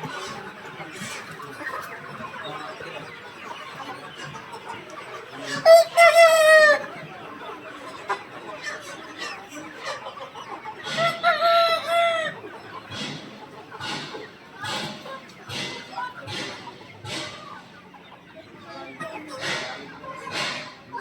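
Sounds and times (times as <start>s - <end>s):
chickens clucking: 0.0s - 21.0s.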